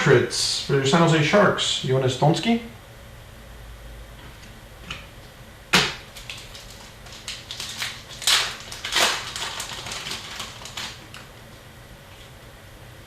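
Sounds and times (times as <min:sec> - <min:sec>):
card packs crinkling and snapping: 0:05.8 - 0:11.5.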